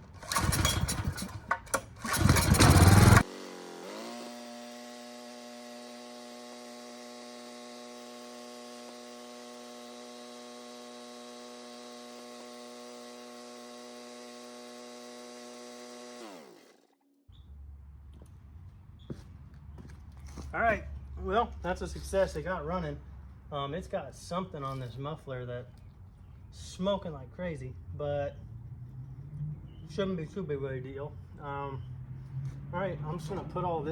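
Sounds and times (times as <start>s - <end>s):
generator engine running: 0.0s - 16.7s.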